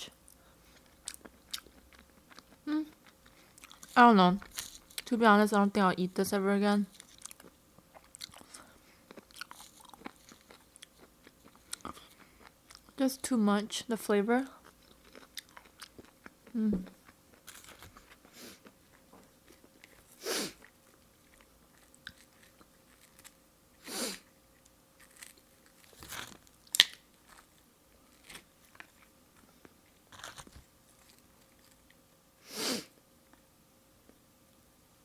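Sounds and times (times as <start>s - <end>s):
chewing and mouth sounds: 0.7s - 5.1s, 6.9s - 13.0s, 14.5s - 23.4s.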